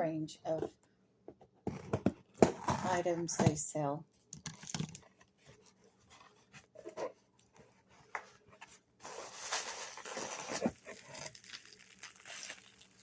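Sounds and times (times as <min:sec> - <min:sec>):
wrapping rustling and crinkling: 0:04.6 - 0:13.0.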